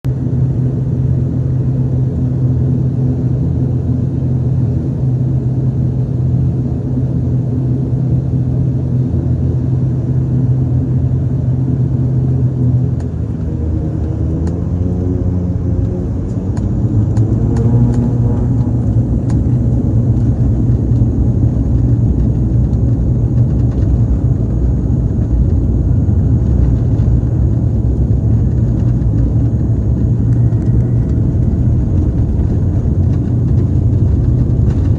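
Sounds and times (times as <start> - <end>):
aircraft engines droning in cabin: 0.1 - 34.9.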